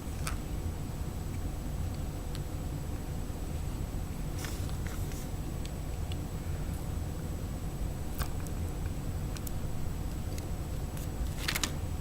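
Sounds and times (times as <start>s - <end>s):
low steady rumble: 0.0s - 12.0s
packaging crinkle: 11.0s - 11.8s.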